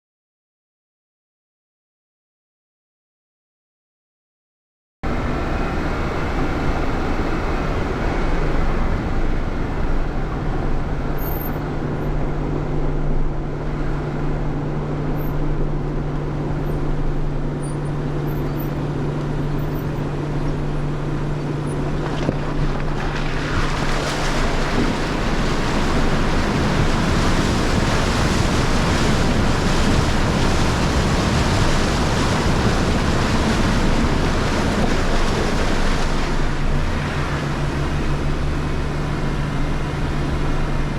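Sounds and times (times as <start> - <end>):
vehicle engine humming: 5.0 - 40.9
water rushing and splashing: 5.1 - 15.1, 18.2 - 40.9.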